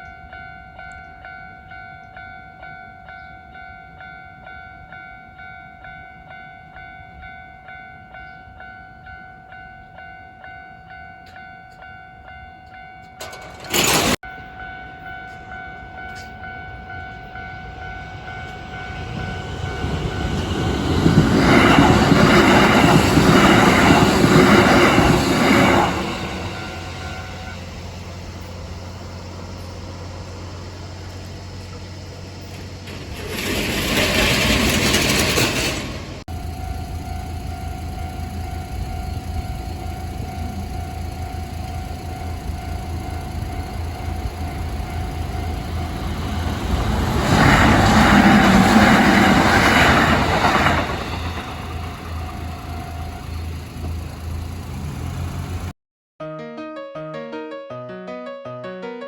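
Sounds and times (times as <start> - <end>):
level crossing warning bell ringing: 0.0 - 55.7
train passing: 0.0 - 55.7
wheels clacking over rail joints: 12.7 - 14.3, 15.3 - 55.7.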